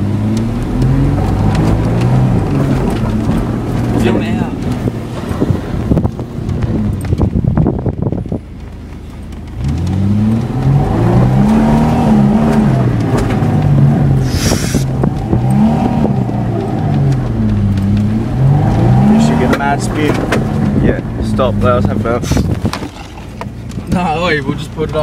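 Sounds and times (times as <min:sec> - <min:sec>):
car engine revving: 0:00.0 - 0:25.0
rough clatter: 0:00.3 - 0:25.0
brief hiss: 0:14.2 - 0:14.9.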